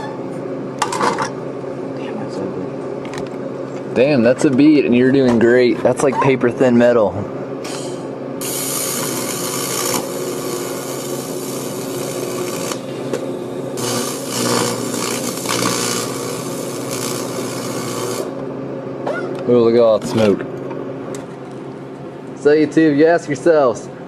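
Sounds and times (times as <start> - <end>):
welding arc buzzing hiss: 7.6 - 18.6.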